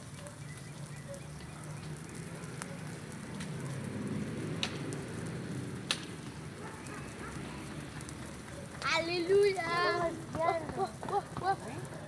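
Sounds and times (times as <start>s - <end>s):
bonfire crackling: 0.0s - 12.0s
sharp pops: 5.8s - 6.4s.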